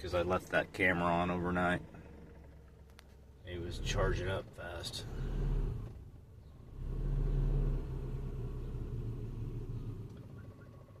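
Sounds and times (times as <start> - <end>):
car engine rumble from inside: 0.0 - 11.0.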